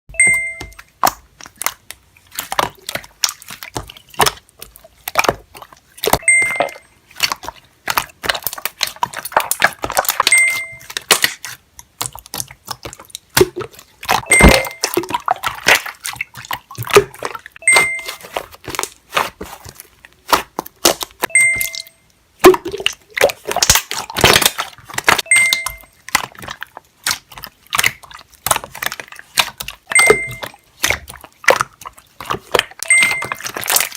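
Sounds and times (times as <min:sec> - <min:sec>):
short ding: 0:00.2 - 0:00.7, 0:06.2 - 0:06.8, 0:14.3 - 0:14.8, 0:17.6 - 0:18.2, 0:21.3 - 0:22.0, 0:29.9 - 0:30.4
slime crackling and popping: 0:00.7 - 0:06.3, 0:07.1 - 0:21.4, 0:22.4 - 0:33.9.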